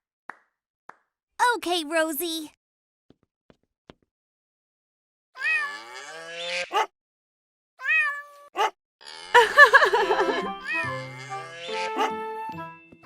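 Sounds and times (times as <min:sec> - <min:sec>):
cartoon cat meowing: 0:05.4 - 0:05.9, 0:07.8 - 0:08.5.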